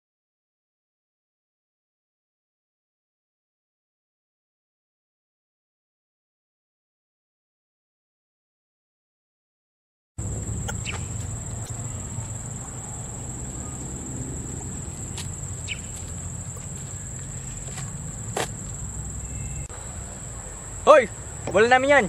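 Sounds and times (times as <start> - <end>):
low rumble: 10.2 - 19.7
insects whining: 10.2 - 22.0.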